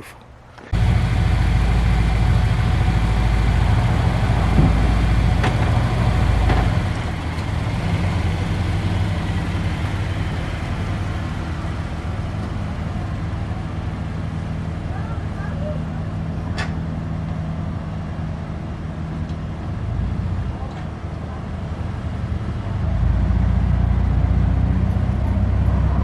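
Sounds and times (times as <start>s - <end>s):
car engine running: 0.7s - 15.5s.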